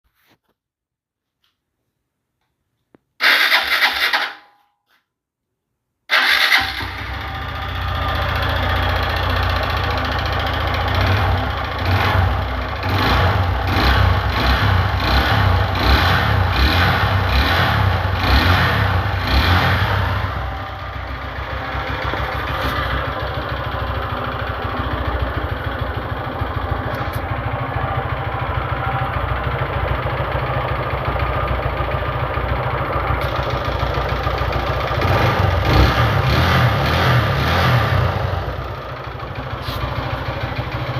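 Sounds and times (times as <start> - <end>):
motorcycle engine running: 6.7 - 40.9.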